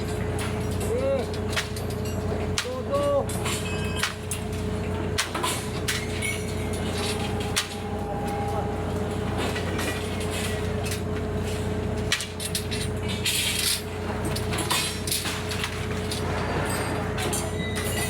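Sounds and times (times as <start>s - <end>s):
machine engine running: 4.5s - 13.0s.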